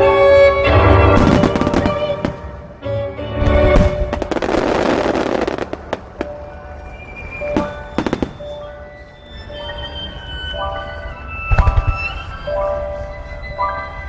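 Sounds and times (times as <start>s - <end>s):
music: 0.0s - 14.0s
fireworks bursting: 1.1s - 2.6s, 3.6s - 9.1s.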